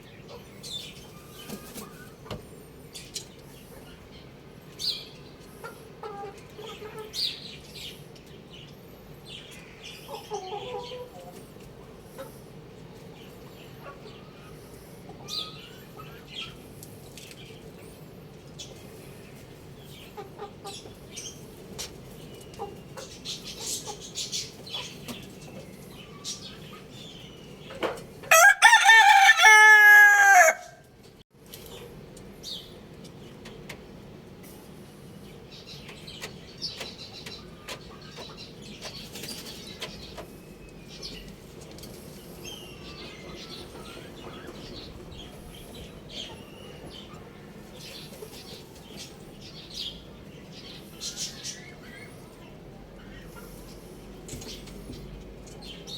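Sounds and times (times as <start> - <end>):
chicken clucks and chirps: 0.0 - 55.9
rooster crowing: 28.3 - 30.8.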